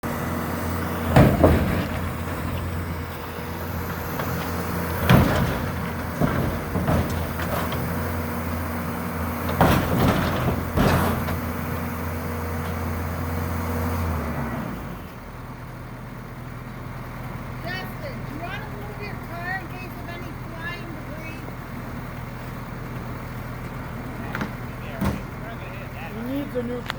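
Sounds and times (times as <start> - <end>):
skid steer engine running: 0.0 - 26.9
loud metal bangs and crunches: 0.6 - 13.0.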